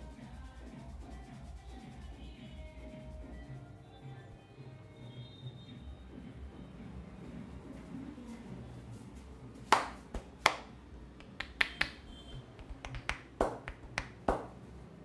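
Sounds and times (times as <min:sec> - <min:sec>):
hands slapping skin: 0:09.7 - 0:12.0, 0:12.6 - 0:14.5.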